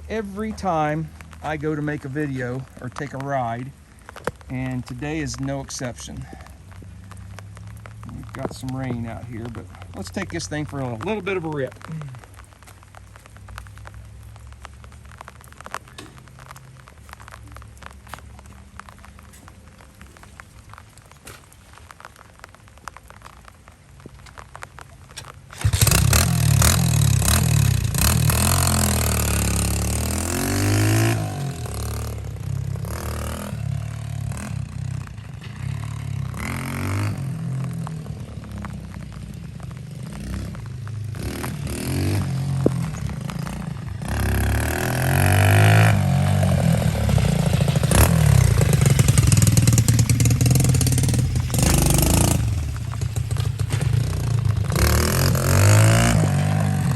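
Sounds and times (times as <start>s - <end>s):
minibike engine revving: 25.5s - 56.9s.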